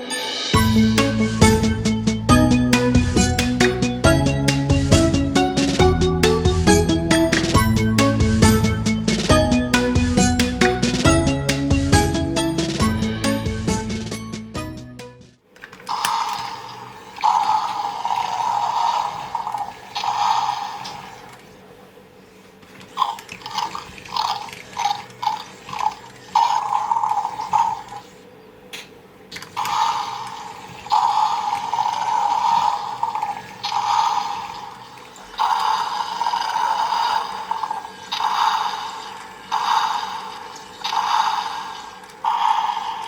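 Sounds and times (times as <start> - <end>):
toy motor hum: 15.9 - 21.2, 23.0 - 28.0, 29.4 - 43.0
toy speaker roar effects: 23.1 - 28.0, 29.6 - 43.0.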